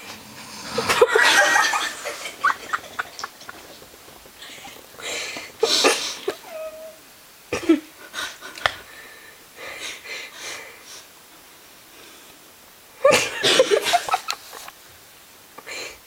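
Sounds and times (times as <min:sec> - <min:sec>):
person snoring: 0:00.0 - 0:02.5.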